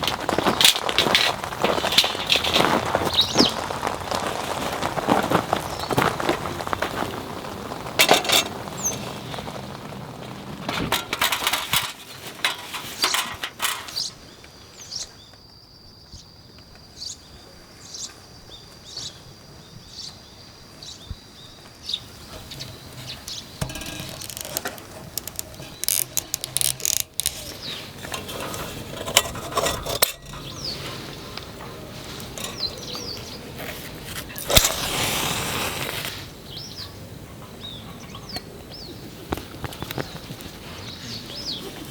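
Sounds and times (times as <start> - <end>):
tent poles and pegs clicking: 0.0 - 14.2, 22.2 - 35.1.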